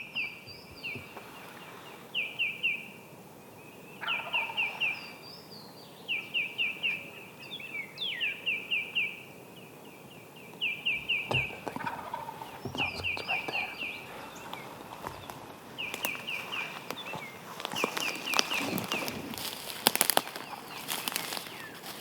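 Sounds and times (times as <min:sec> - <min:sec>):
turkeys gobbling: 0:04.0 - 0:04.8, 0:11.0 - 0:22.0
sharp crackles: 0:14.5 - 0:22.0.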